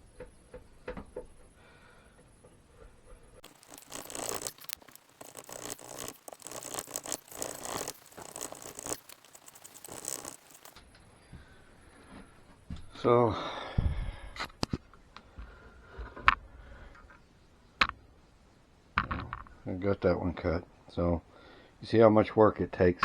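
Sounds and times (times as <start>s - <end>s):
hand tool scraping wood: 3.4s - 10.8s.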